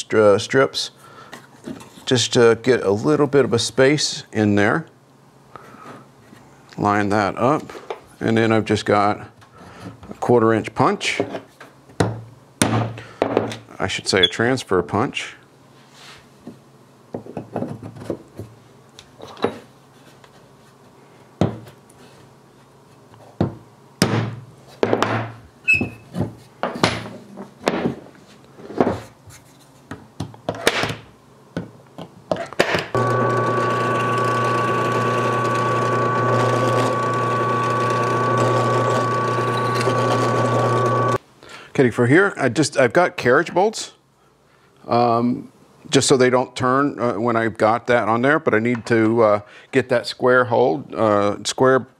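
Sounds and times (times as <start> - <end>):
electric power tool whining: 33.0 - 41.2.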